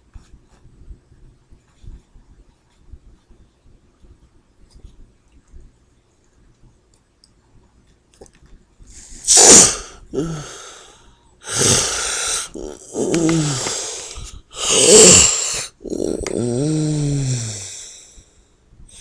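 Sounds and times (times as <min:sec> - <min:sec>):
person snoring: 0:09.4 - 0:18.1
loud snorting gasp: 0:11.5 - 0:17.9.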